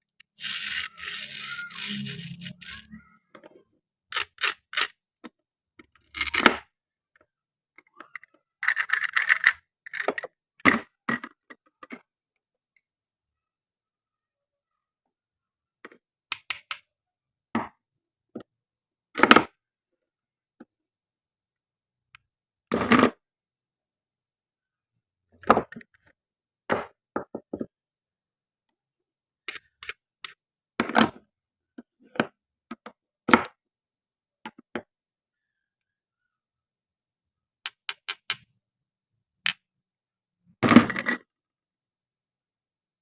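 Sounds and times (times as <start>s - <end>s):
toy food clicks and knocks: 0.2s - 3.0s, 4.1s - 5.0s, 8.0s - 11.5s, 16.3s - 16.9s, 37.7s - 38.5s.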